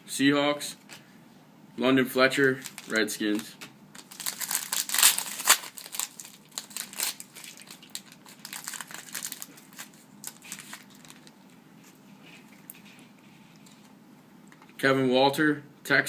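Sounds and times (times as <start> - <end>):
trading cards rustling: 2.4 - 11.3.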